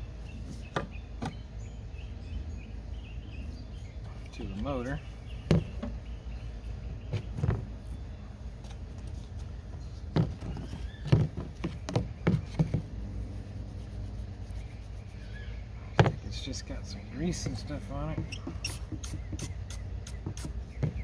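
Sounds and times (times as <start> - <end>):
knocks and clunks of exhaust pipe: 5.4 - 6.1, 7.1 - 7.8, 10.0 - 12.9, 15.9 - 16.4, 20.2 - 21.0.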